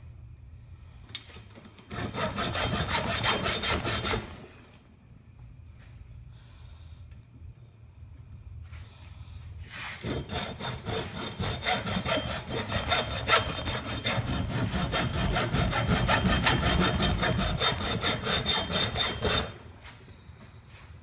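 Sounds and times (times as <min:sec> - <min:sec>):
hacksaw sawing: 0:01.9 - 0:04.5, 0:10.0 - 0:19.6.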